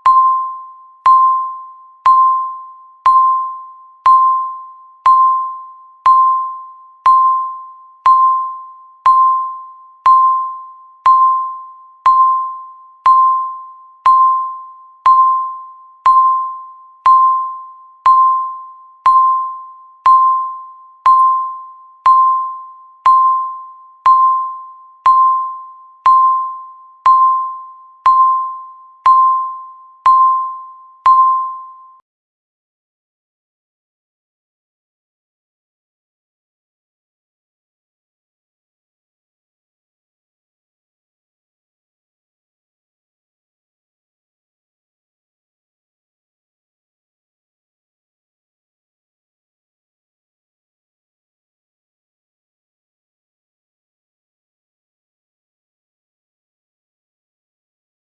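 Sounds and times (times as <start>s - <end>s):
bell-like timer beeps: 0.0s - 32.0s.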